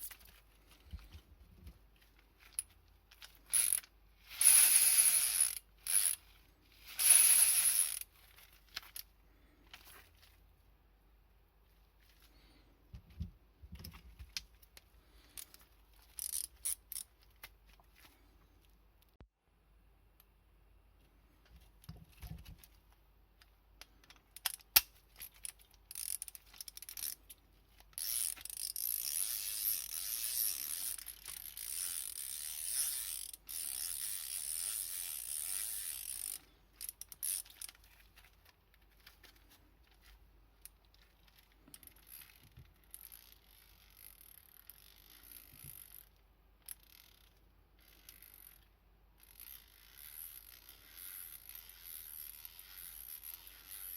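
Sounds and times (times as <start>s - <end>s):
ratchet clicking: 2.6s - 6.2s, 6.8s - 8.1s, 15.4s - 17.1s, 24.1s - 27.2s, 28.0s - 37.8s, 41.7s - 48.6s, 49.2s - 53.9s.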